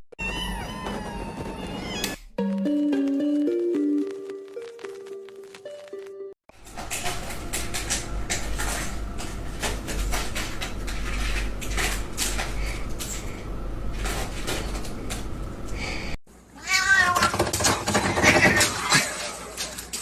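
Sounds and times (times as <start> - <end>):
household objects knocking and clattering: 17.2 - 19.1.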